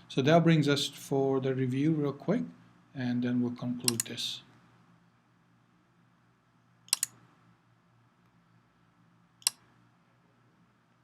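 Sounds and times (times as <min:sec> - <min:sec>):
faint low hum: 0:00.0 - 0:11.0
computer mouse clicks: 0:03.9 - 0:04.1, 0:06.9 - 0:07.2, 0:09.4 - 0:09.7.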